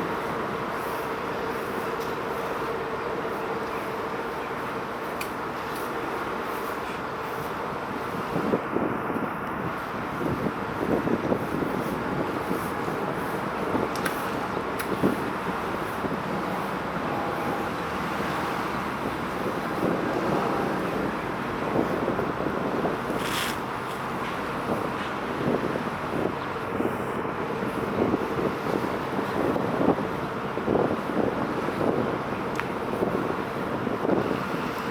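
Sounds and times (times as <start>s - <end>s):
road traffic: 0.0s - 34.9s
wind on microphone: 7.5s - 34.9s.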